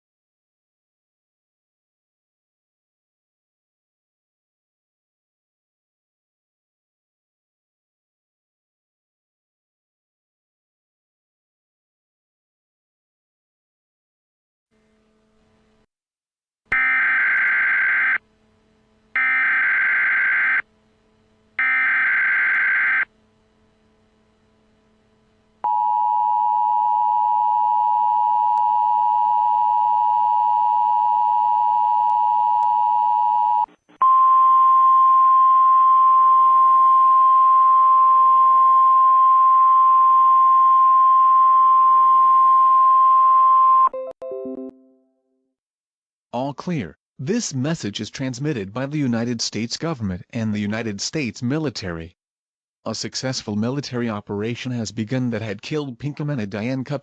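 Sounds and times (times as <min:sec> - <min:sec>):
two-tone attention signal: 0:16.7 - 0:18.2, 0:19.2 - 0:20.6, 0:21.6 - 0:23.1
warbling data tones: 0:16.8 - 0:18.2, 0:19.2 - 0:20.6, 0:21.6 - 0:23.1.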